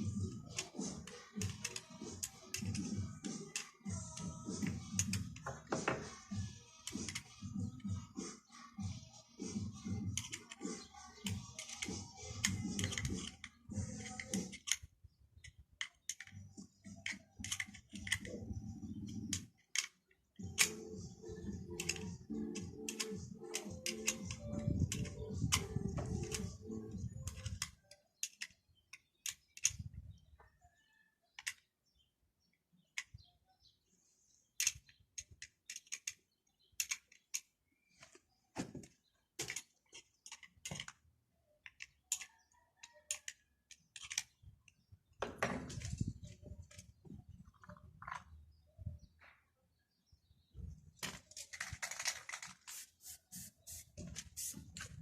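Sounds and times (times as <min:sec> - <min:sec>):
hand tools clicking and tapping: 0:00.0 - 0:07.9, 0:09.8 - 0:29.9, 0:34.6 - 0:47.3
rubbing and shuffling: 0:51.2 - 0:55.0.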